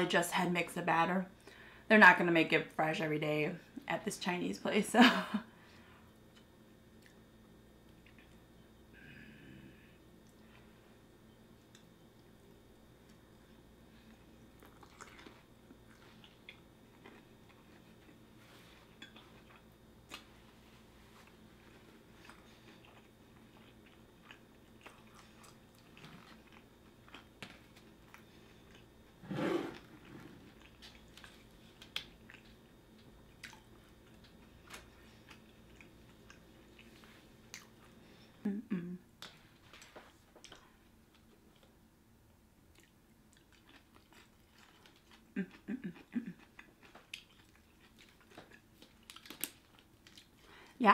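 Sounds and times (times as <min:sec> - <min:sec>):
wet chewing: 0:14.0 - 0:18.2, 0:21.2 - 0:28.9, 0:42.7 - 0:50.4.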